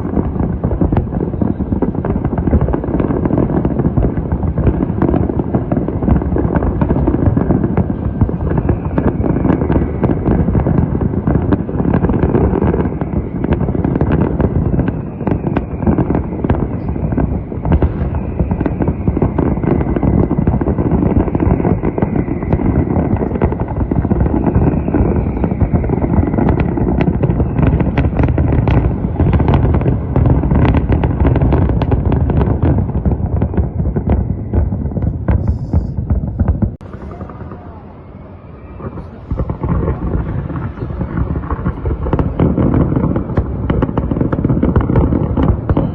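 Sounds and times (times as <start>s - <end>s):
fireworks bangs and crackling: 0.0s - 45.9s
falling whistles: 12.5s - 28.5s, 36.8s - 42.2s.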